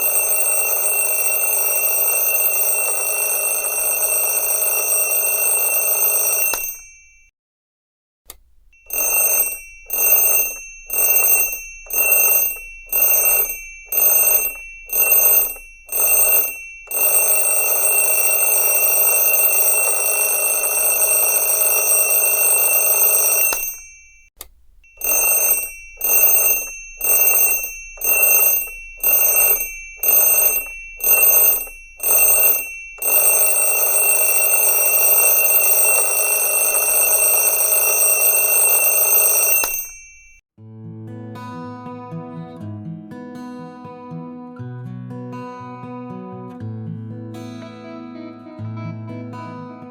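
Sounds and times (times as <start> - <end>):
alarm ringing: 0.0 - 7.3, 8.8 - 24.3, 24.9 - 40.4.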